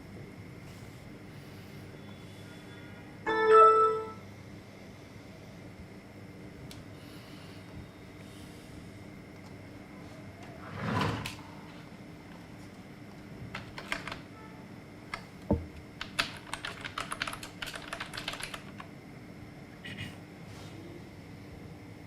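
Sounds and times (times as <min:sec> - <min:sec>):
typing on computer keyboard: 0:13.5 - 0:14.3, 0:16.0 - 0:18.9.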